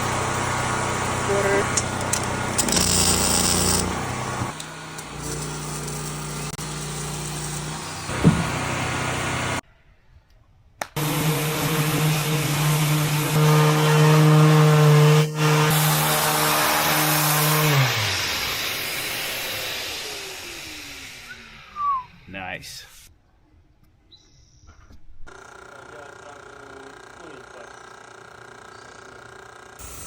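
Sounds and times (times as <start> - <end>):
power tool motor whine: 0.0 - 9.6, 11.0 - 21.8, 28.0 - 30.0.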